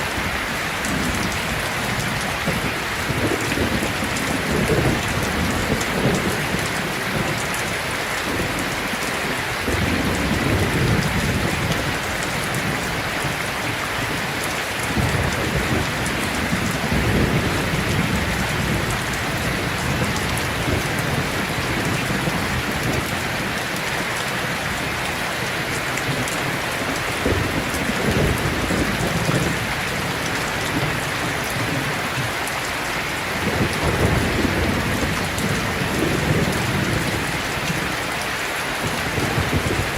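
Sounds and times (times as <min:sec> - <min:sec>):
heavy rain falling: 0:00.0 - 0:39.9
low thunder rumbling: 0:00.3 - 0:32.4, 0:33.1 - 0:38.1, 0:38.8 - 0:39.9.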